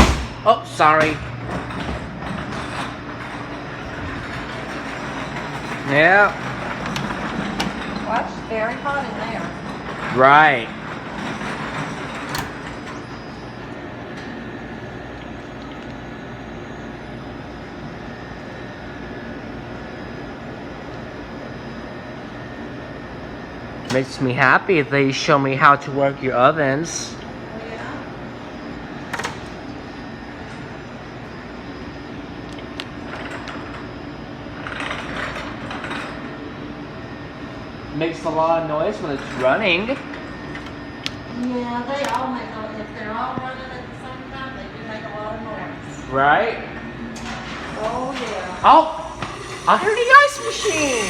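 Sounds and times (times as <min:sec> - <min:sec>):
fans and motors whirring: 0:00.0 - 0:51.0
kitchen machinery hum: 0:00.0 - 0:51.0
steady tone: 0:47.5 - 0:51.0
hissing rush: 0:47.6 - 0:51.0.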